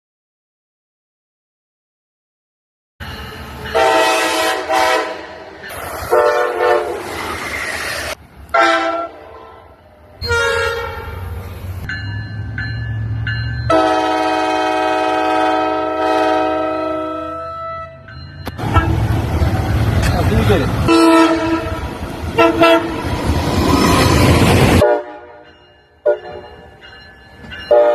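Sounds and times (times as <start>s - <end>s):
train horn blasts: 3.7s - 7.0s, 8.5s - 11.4s, 13.7s - 19.1s, 20.8s - 23.1s, 24.7s - 26.6s, 27.7s - 27.9s.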